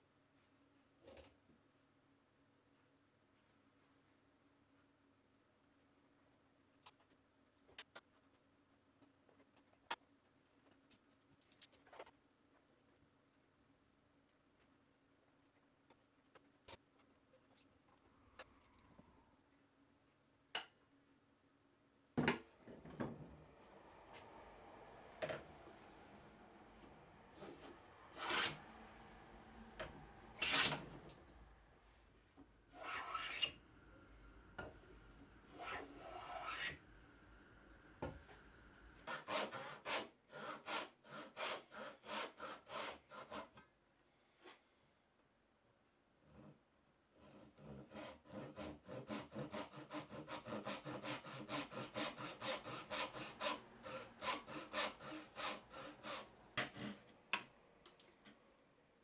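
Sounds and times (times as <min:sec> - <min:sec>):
hand tool strokes on wood: 0:22.7 - 0:32.1, 0:47.2 - 0:57.0.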